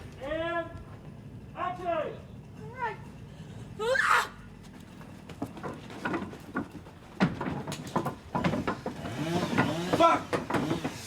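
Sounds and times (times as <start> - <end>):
loud rising cry: 3.8 - 4.4
knocks and thumps: 5.0 - 11.0.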